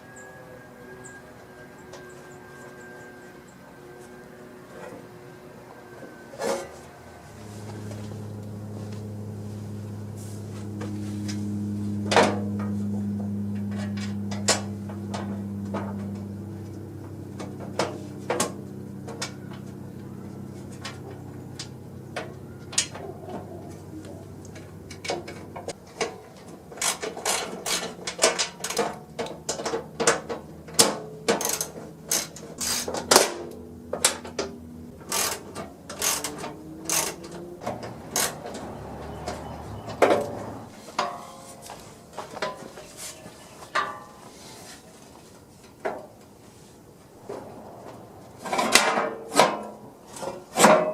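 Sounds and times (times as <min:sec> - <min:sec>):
low hum: 0:00.0 - 0:25.8, 0:27.9 - 0:40.8, 0:47.0 - 0:50.2
metal tools clicking and clanking: 0:34.0 - 0:41.4.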